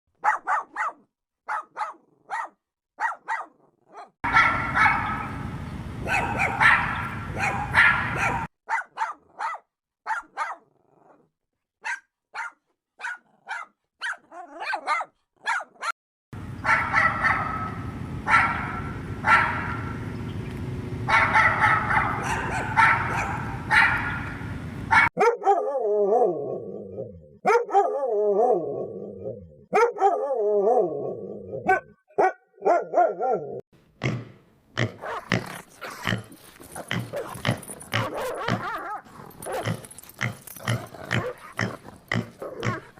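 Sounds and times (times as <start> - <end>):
dogs barking: 0.2 - 5.4, 6.0 - 10.7, 11.8 - 20.0, 21.0 - 33.6, 35.0 - 42.9.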